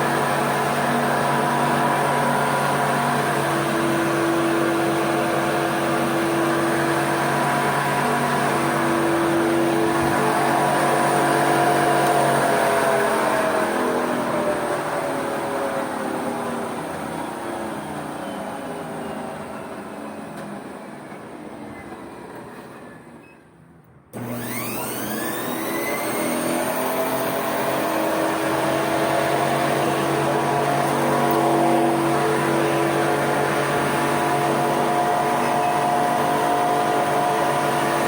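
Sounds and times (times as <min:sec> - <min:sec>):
treadmill motor and belt running: 0:24.2 - 0:38.0.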